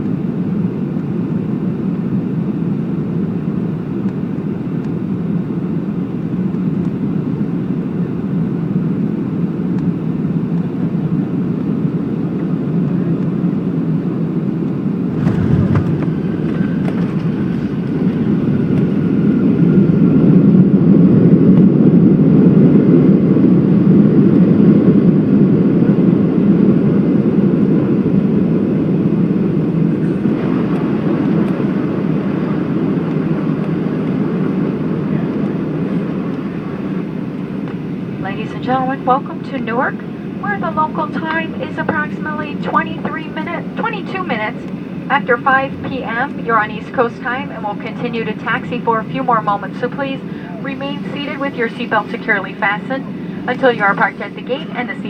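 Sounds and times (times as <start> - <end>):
airplane cabin rumble: 0.0 - 55.0
wheels touching down jolt: 15.1 - 16.6.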